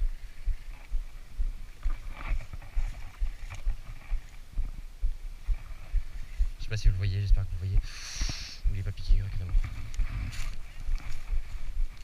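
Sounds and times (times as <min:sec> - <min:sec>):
wind buffeting microphone: 0:00.0 - 0:07.9, 0:08.6 - 0:12.0
faint short rustles: 0:09.4 - 0:12.0.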